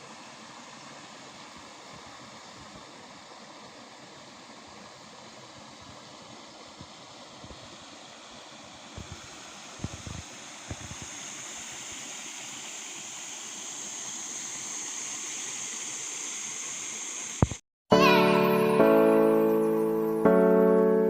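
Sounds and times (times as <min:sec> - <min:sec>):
running water rushing: 0:00.0 - 0:17.6.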